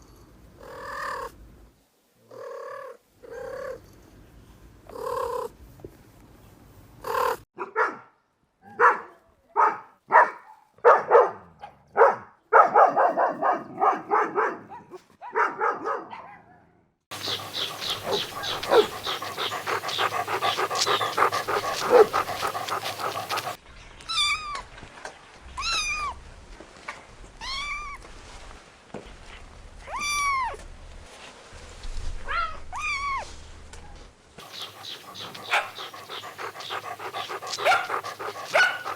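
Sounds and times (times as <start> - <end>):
animal calls: 17.1 - 23.6, 34.4 - 38.9
dog calls: 17.1 - 23.6, 34.4 - 38.9.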